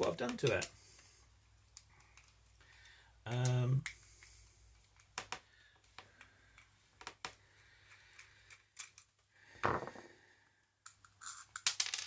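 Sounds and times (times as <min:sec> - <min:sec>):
padlock clicks and taps: 0:04.9 - 0:07.4.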